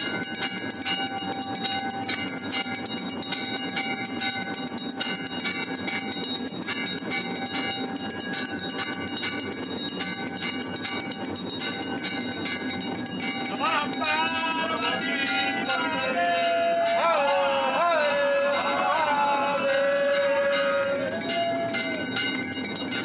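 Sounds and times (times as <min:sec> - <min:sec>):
temple bells ringing: 0:00.0 - 0:23.0
voices singing: 0:13.4 - 0:22.4.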